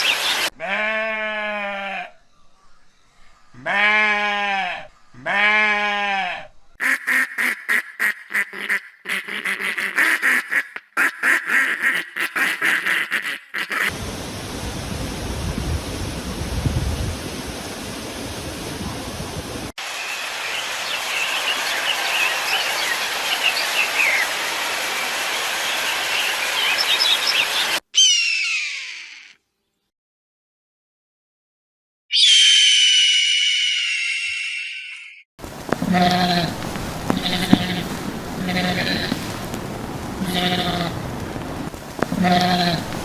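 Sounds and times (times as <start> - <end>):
birds chirping: 0.0 - 0.5, 19.9 - 24.4, 25.4 - 29.3, 35.8 - 39.5, 40.2 - 41.1
duck quacking rapidly: 6.8 - 13.9
rushing noise with low rumble: 14.0 - 19.7, 35.4 - 43.0
falling bird call: 25.1 - 29.4, 32.1 - 35.2, 35.8 - 39.4, 40.2 - 41.0, 42.0 - 43.0.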